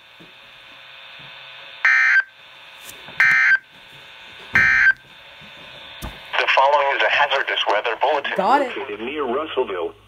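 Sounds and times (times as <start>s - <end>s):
radio hiss: 2.4s - 10.0s.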